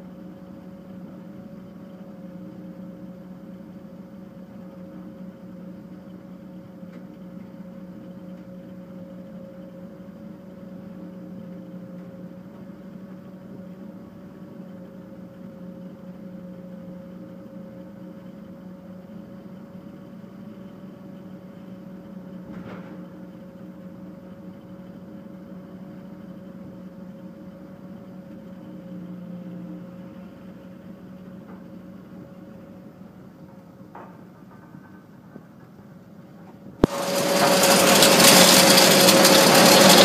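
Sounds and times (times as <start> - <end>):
machinery humming: 17.8 - 40.0.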